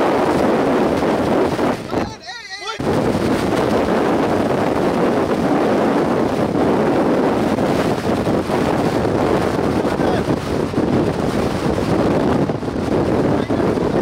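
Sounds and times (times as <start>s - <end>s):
storm wind on microphone: 0.0s - 14.0s.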